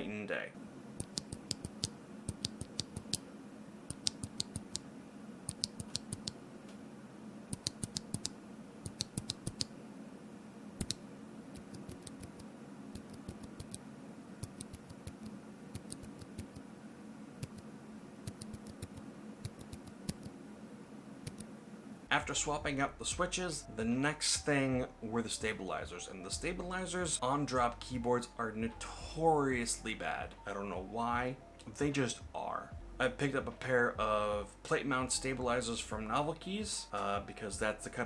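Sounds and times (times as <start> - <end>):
muted keyboard keystrokes: 1.0 - 3.2, 3.9 - 4.8, 5.5 - 6.4, 7.5 - 9.7, 10.8 - 13.8, 14.4 - 16.6, 18.2 - 20.3.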